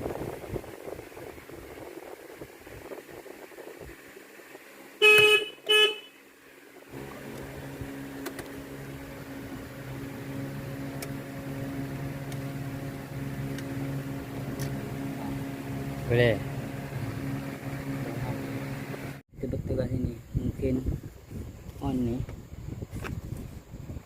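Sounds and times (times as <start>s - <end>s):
car horn toots: 5.0s - 6.2s
steady low hum: 6.3s - 24.0s.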